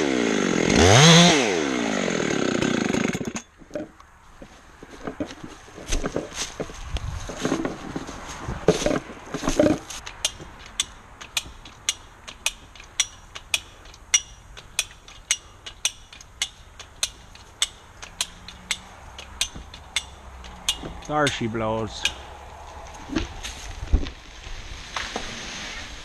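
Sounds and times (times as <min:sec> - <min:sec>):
rustling handling noise: 0:03.6 - 0:11.8, 0:12.7 - 0:25.2
ratchet clicking: 0:10.0 - 0:21.2.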